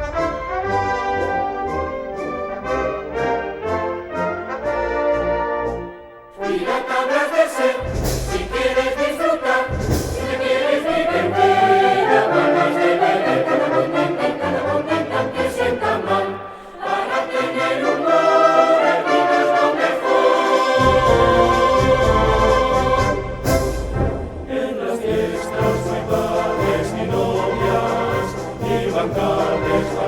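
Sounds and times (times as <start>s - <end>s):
choir singing: 0.0s - 4.8s, 6.3s - 30.0s
instrumental accompaniment: 0.0s - 16.2s, 16.8s - 30.0s.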